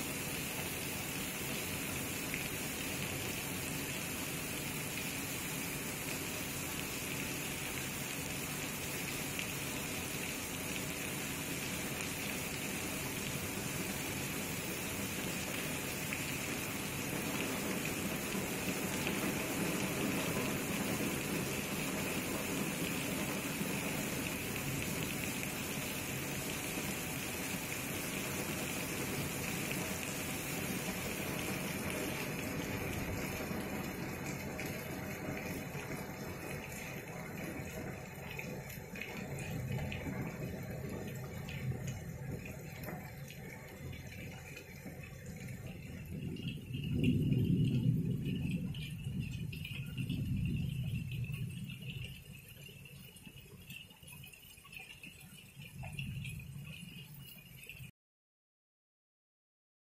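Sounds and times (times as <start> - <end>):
heavy rain falling: 0.0 - 57.9.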